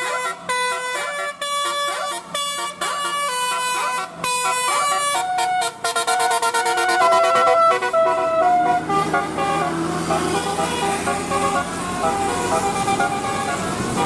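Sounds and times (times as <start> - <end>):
multi-tone bus horn playing a tune: 0.0 - 14.0.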